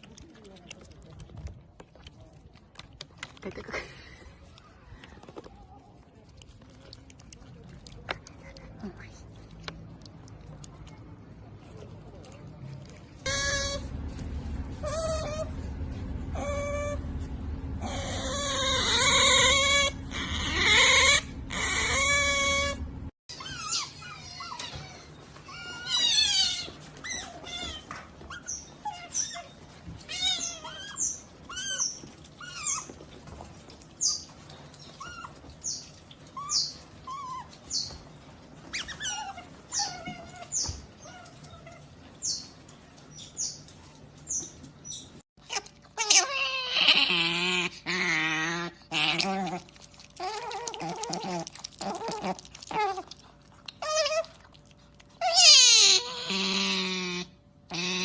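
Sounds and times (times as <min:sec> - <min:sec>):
otters crying high-pitched: 0:13.2 - 0:13.9, 0:17.8 - 0:32.9, 0:45.4 - 0:53.1, 0:55.2 - 0:58.0.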